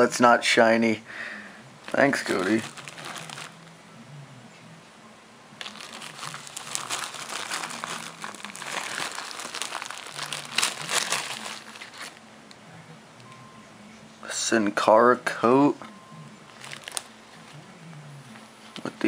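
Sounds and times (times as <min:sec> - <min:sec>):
packaging crinkling and rustling: 0:01.8 - 0:03.7, 0:05.6 - 0:12.2, 0:16.5 - 0:17.5.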